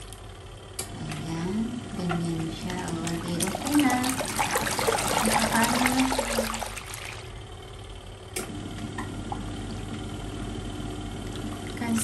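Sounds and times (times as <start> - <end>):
steady low hum: 0.0 - 12.0
water splashing and trickling: 2.9 - 7.3.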